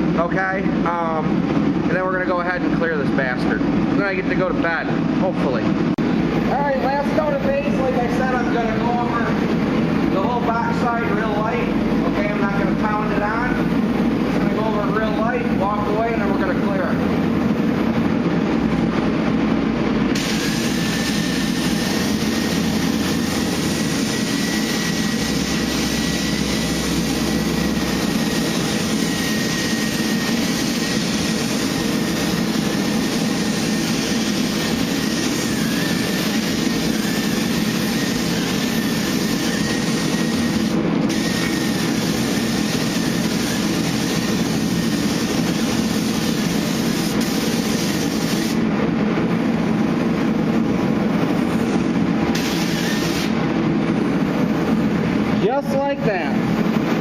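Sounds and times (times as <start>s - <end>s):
low machine hum: 0.0s - 57.0s
paint spray gun hissing: 20.2s - 24.8s, 29.1s - 48.6s, 52.3s - 53.4s.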